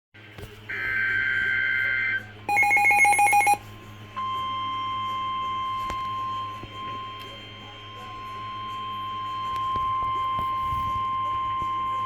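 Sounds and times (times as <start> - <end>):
steady warning alarm tone: 0.7 - 12.0
rapidly pulsing electronic beep: 0.8 - 3.6.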